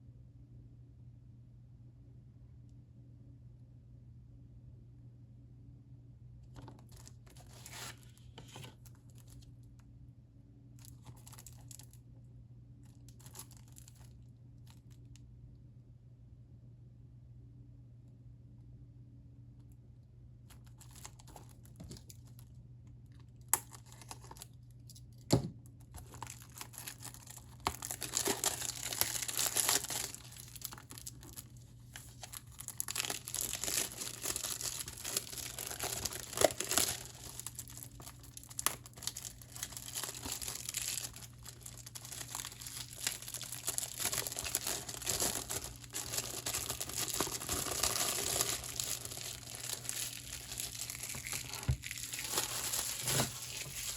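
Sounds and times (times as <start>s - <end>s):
shrink wrap tearing and crinkling: 6.7s - 9.5s, 10.8s - 12.0s, 12.8s - 15.0s, 20.5s - 22.5s, 23.2s - 24.6s, 25.8s - 53.9s.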